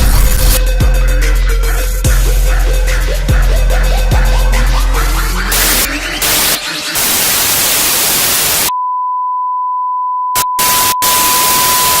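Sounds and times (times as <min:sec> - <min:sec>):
static hiss: 0:05.5 - 0:08.7
high single-pitch beep: 0:08.7 - 0:12.0.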